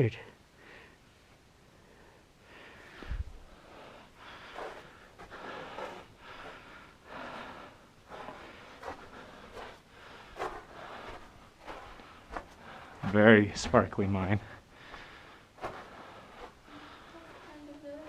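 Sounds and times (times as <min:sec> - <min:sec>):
footsteps crunching on crust: 0:08.1 - 0:13.3.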